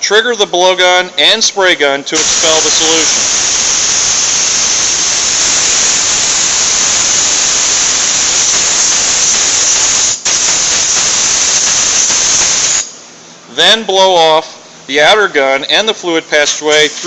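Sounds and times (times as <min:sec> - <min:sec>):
compressed air hissing: 0:02.2 - 0:13.1.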